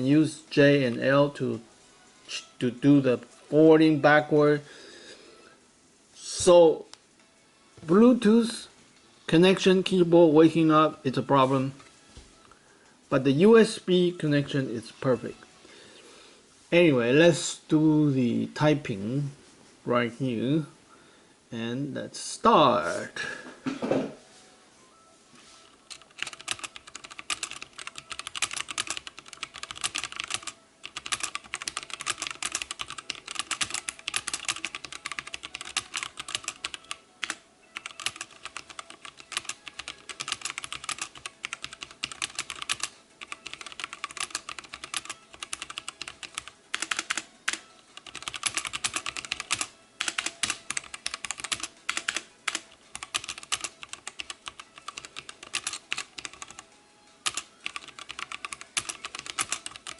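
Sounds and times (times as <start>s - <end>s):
mechanical keyboard typing: 25.8s - 56.6s, 57.2s - 59.9s.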